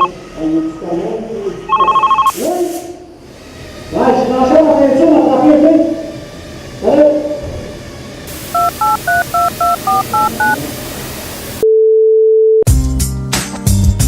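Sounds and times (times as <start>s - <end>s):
touch-tone keypad beeps: 1.7s - 2.3s, 8.6s - 10.6s
hiss: 2.3s - 3.9s, 8.2s - 11.6s
loud steady phone tone: 8.6s - 10.6s, 11.6s - 12.7s
music: 12.7s - 14.0s.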